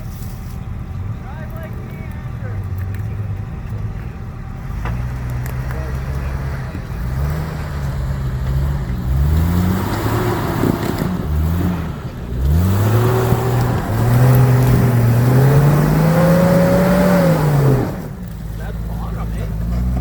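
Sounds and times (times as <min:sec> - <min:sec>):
engine revving: 0:01.3 - 0:20.0.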